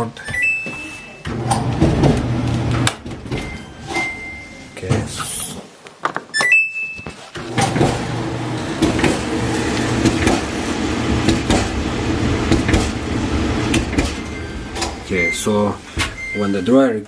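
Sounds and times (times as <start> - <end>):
dryer control beep: 0.2 - 1.6, 3.3 - 4.8, 6.4 - 7.2, 13.8 - 16.9
dryer drum rumbling and knocking: 1.3 - 3.5, 7.4 - 16.3.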